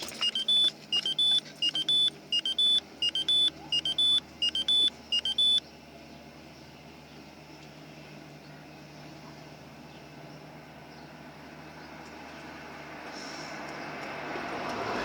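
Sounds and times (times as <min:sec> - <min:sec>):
rising electronic warning beeps: 0:00.1 - 0:05.6
faint steady hum: 0:00.2 - 0:09.0.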